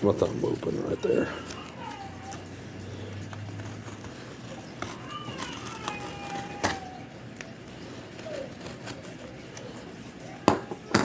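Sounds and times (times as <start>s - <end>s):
young child crying and whining: 0.8s - 2.8s, 4.4s - 7.2s.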